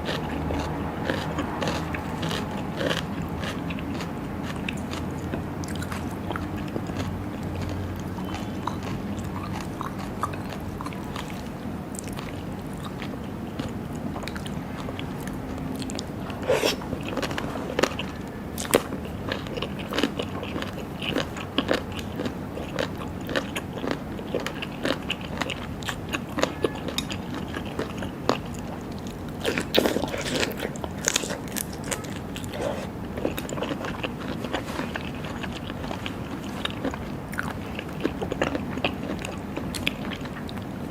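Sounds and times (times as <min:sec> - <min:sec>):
biting and chewing: 0:00.0 - 0:40.9
steady low hum: 0:00.0 - 0:40.9.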